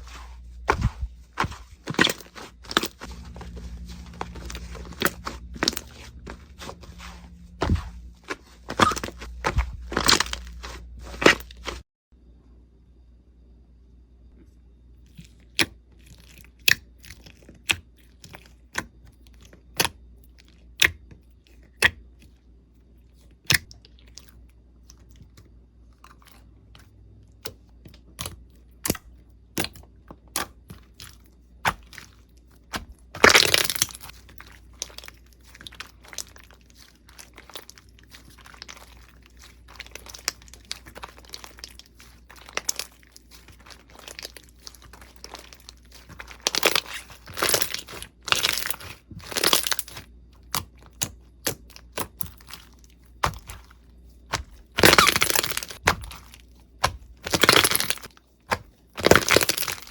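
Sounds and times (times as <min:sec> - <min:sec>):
slime popping and crackling: 0:08.4 - 0:11.8, 0:32.7 - 0:53.7, 0:54.3 - 0:59.9.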